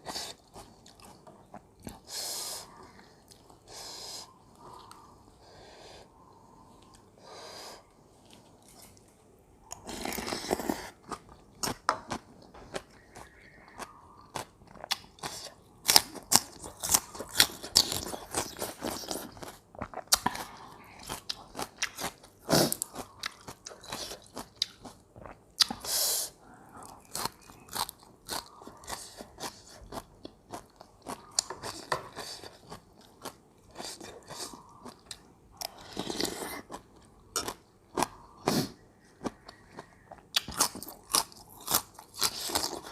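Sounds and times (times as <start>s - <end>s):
crunchy biting and chewing: 9.7s - 25.8s, 26.8s - 42.9s.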